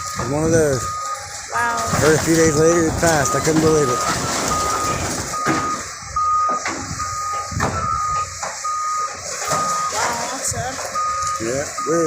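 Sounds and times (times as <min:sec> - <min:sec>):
heavy machine engine rumble: 0:00.0 - 0:12.0
backup alarm beeping: 0:00.2 - 0:12.0.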